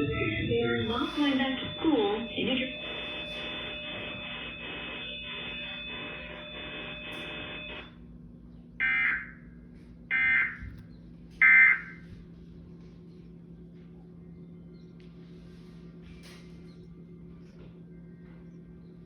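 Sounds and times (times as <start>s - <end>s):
loud digital data bursts: 0.0s - 8.0s
pulsing electronic buzz: 0.0s - 8.1s.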